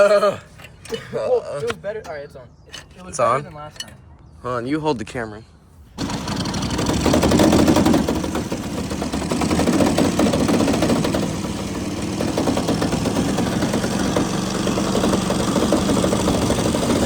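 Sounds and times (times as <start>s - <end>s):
go-kart engine revving: 6.0s - 17.0s.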